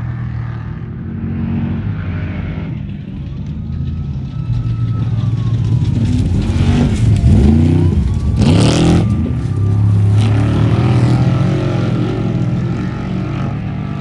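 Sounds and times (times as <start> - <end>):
truck engine revving past: 0.0 - 14.0
loud rush of noise: 4.1 - 12.6.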